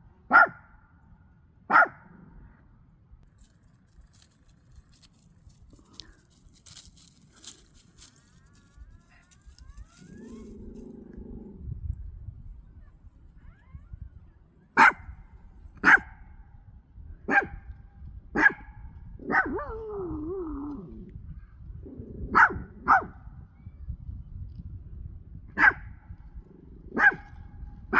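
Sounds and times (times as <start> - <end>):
wind rumble on microphone: 0.0 - 27.9
small dog barking: 0.3 - 0.7, 1.7 - 2.2, 14.8 - 15.2, 15.8 - 16.3, 17.3 - 17.7, 18.3 - 20.2, 22.3 - 23.4, 25.6 - 26.0, 26.9 - 27.9.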